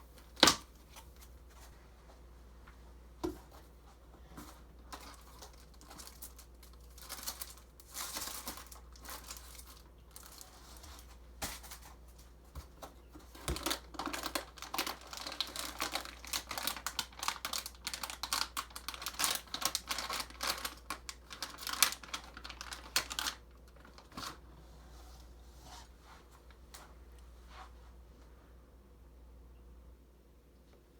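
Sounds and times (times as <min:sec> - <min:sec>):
faint low hum: 0:00.0 - 0:30.9
plastic packaging crinkling: 0:04.8 - 0:11.9, 0:13.3 - 0:24.4.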